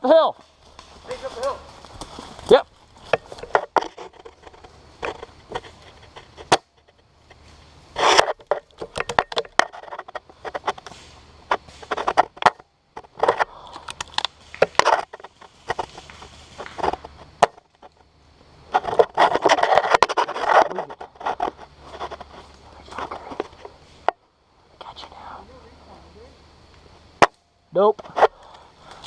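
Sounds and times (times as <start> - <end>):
twigs clicking and snapping: 0.3 - 24.2, 28.2 - 29.0
footsteps crunching dry leaves: 0.4 - 3.5.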